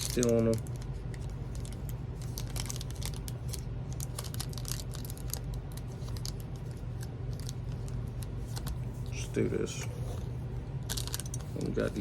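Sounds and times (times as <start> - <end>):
foil wrapper crinkling: 0.0 - 8.8
steady low hum: 0.0 - 12.0.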